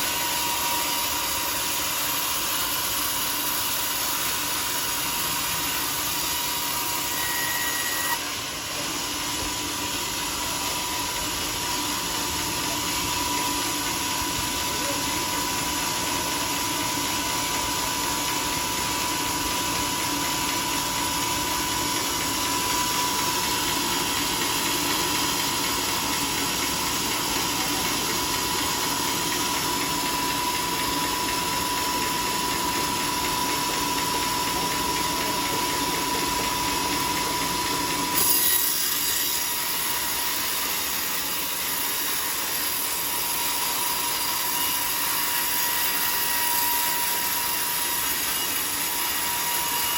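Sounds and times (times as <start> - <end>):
sawmill sawing log: 32.0 - 49.9.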